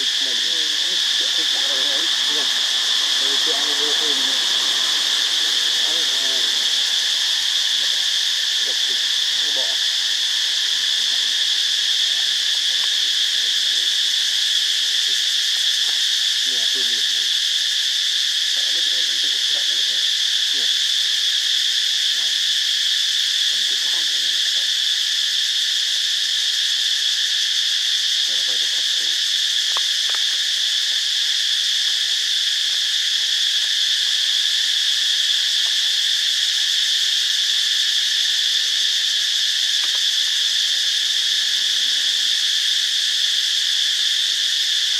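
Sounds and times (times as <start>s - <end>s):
faint voices: 0.0s - 6.7s, 8.6s - 9.8s
high-pitched insect chorus: 0.0s - 44.9s.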